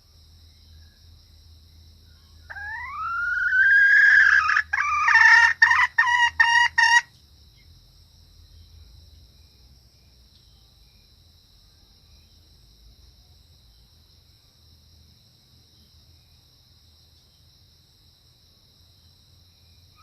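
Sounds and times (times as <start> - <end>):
high insect trill: 0.0 - 20.0
junglefowl hen calling: 2.5 - 7.1.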